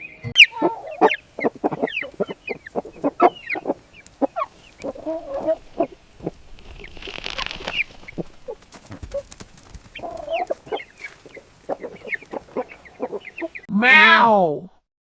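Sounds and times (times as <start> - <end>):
chickens clucking: 0.0 - 13.7
noisy rustle: 2.7 - 12.8.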